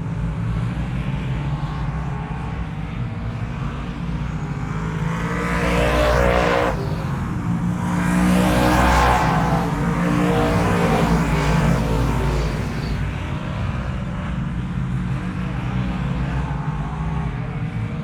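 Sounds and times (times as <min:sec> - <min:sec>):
car engine passing by: 0:03.9 - 0:13.2.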